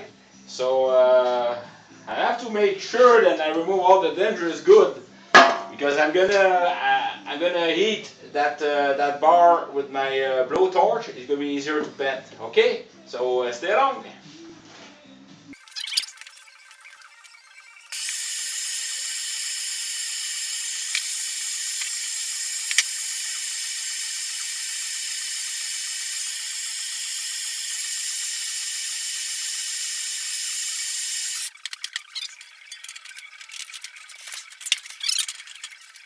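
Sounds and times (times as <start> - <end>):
blowtorch flame hissing: 17.9 - 31.5
clicks and rattles: 31.4 - 36.0.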